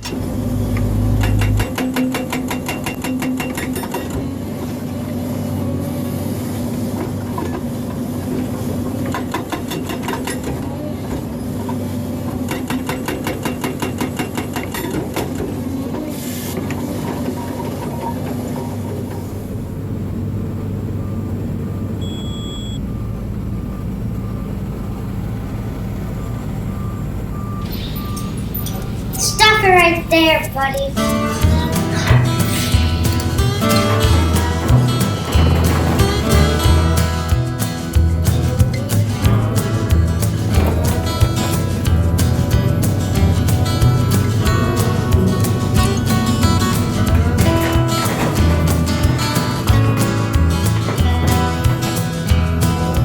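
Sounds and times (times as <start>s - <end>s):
excavator engine running: 0.0s - 53.0s
reversing alarm beeping: 20.6s - 31.2s
hydraulic breaker hammering concrete: 31.0s - 53.0s.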